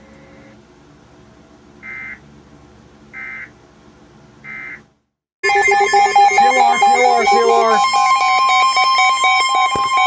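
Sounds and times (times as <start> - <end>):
digital tone bursts: 5.4 - 10.0.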